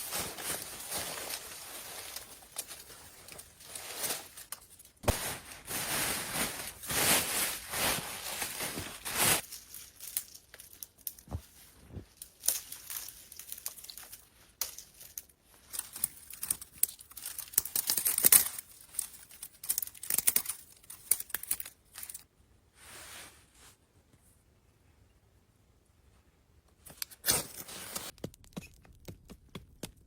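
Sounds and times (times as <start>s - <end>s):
soft rustle: 0.0s - 16.3s, 22.0s - 24.5s
crinkling and crunching handling: 0.0s - 22.3s.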